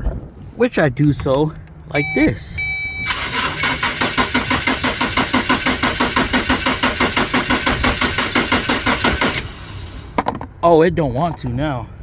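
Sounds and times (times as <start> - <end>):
car starter motor cranking: 3.0 - 10.0.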